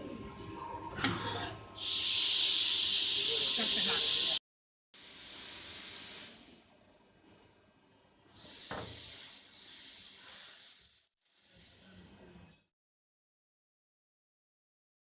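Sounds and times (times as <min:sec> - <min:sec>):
hissing spray: 0:01.8 - 0:04.4, 0:05.0 - 0:06.7, 0:08.3 - 0:12.0.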